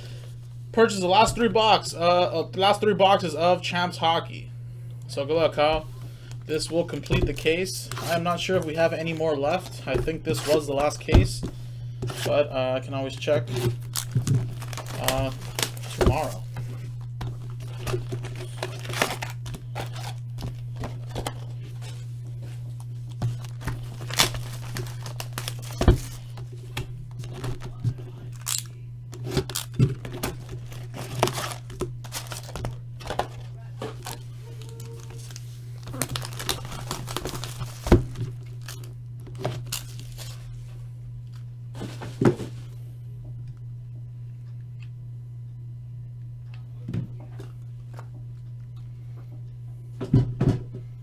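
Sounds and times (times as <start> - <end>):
steady low hum: 0.0 - 51.0
plastic wrapping crinkling and tearing: 13.1 - 40.6.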